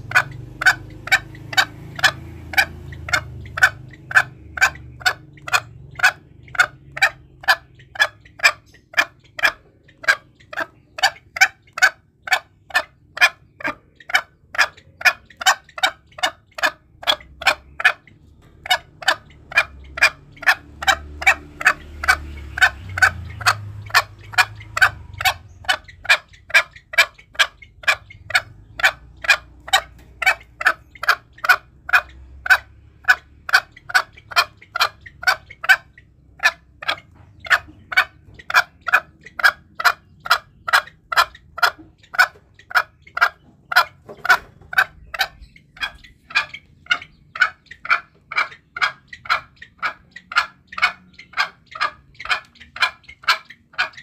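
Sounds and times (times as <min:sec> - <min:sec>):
junglefowl calling: 0:00.0 - 0:54.0.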